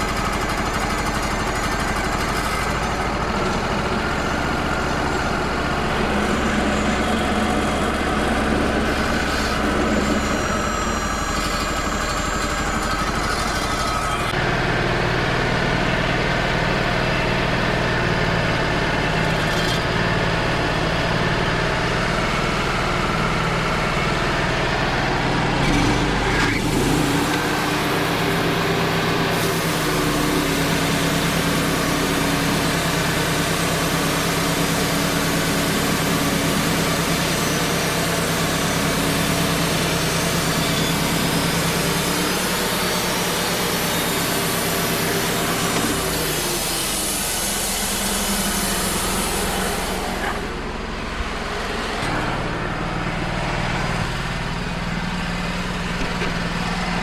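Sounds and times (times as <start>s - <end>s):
sawmill engine under load: 0.0s - 57.0s.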